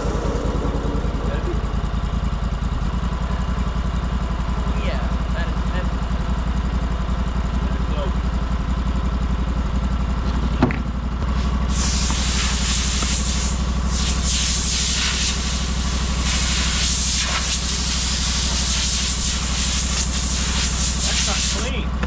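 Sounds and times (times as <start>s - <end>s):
gas engine running: 0.0s - 22.0s
loud steady hiss: 11.7s - 21.7s.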